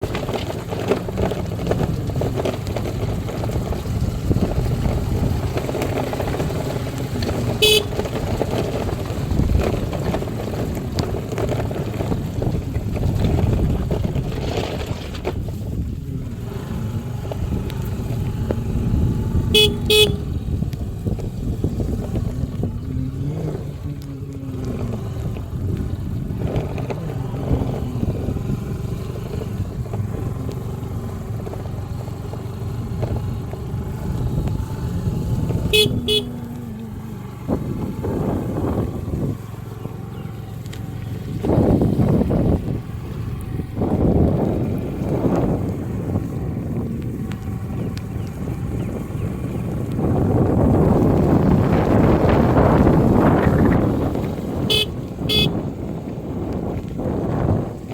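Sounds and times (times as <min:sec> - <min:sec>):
road vehicle running: 0:00.0 - 0:57.9
short horn toots: 0:07.3 - 0:08.7, 0:19.4 - 0:20.4, 0:35.6 - 0:36.6, 0:54.6 - 0:55.6.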